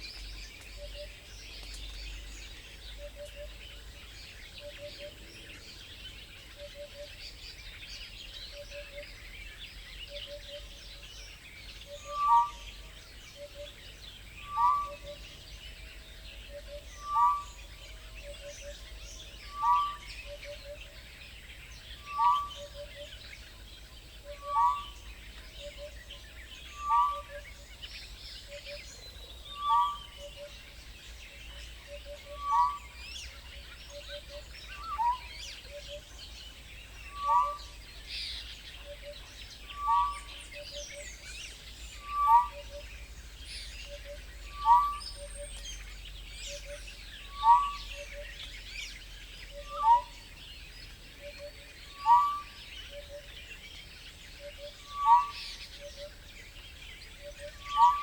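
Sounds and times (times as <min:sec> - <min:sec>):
small birds chirping and twittering: 0:00.0 - 0:58.0
loud falling whistled bird call: 0:54.8 - 0:55.4, 0:57.4 - 0:58.0.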